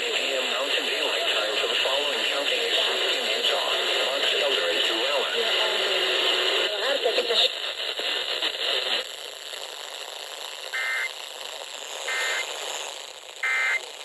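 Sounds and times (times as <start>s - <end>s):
radio static hiss: 0.0s - 14.0s
short data bursts: 10.7s - 11.1s, 12.0s - 12.6s, 13.4s - 13.8s.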